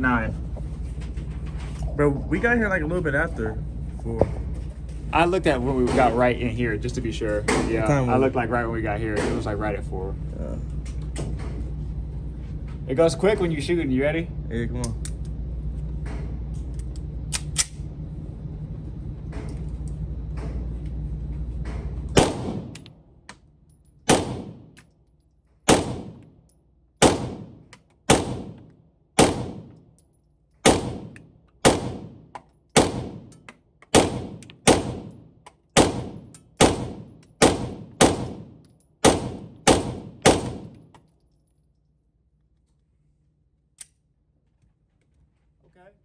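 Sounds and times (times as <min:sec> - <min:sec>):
low steady rumble: 0:00.0 - 0:44.4
pistol shots with echo: 0:22.2 - 0:22.8, 0:24.1 - 0:24.7, 0:25.7 - 0:26.2, 0:27.0 - 0:29.8, 0:30.6 - 0:33.3, 0:33.9 - 0:40.8.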